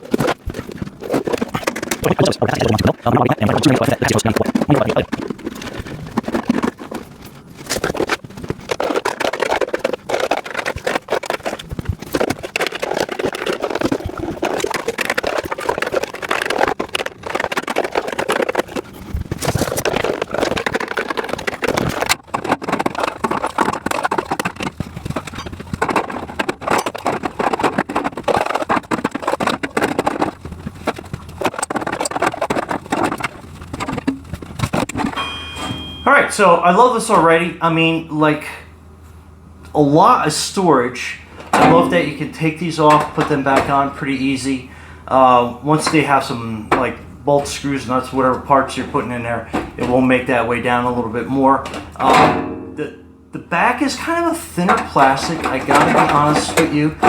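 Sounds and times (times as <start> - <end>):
plastic bins clattering: 0.0 - 36.0, 41.4 - 44.0, 45.8 - 52.8, 53.5 - 57.0.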